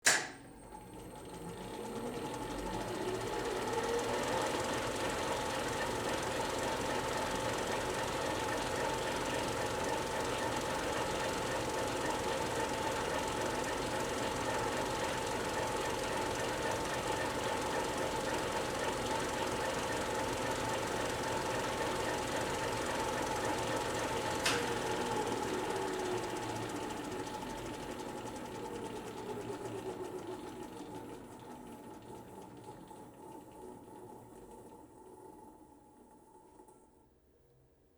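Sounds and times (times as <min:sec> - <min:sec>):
projector mechanical clatter: 0:00.0 - 0:00.5, 0:23.5 - 0:32.9
projector motor whine: 0:00.0 - 0:32.8.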